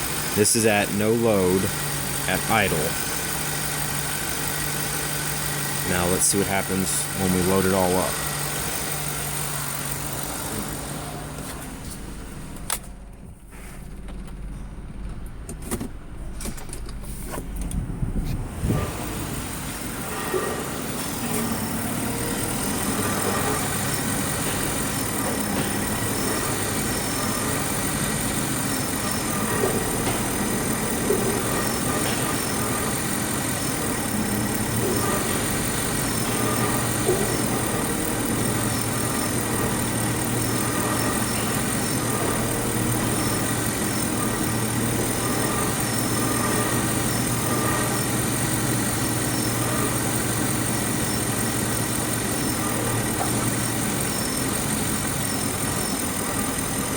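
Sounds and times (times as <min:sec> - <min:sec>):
car engine idling: 0:00.0 - 0:56.9
low hum: 0:10.5 - 0:20.7.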